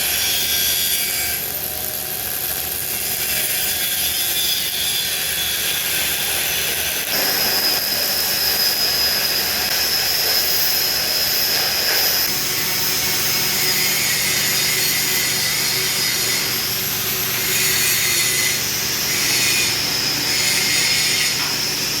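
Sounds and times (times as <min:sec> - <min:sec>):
welding arc hissing: 0:00.0 - 0:22.0
thin high whine: 0:07.0 - 0:22.0.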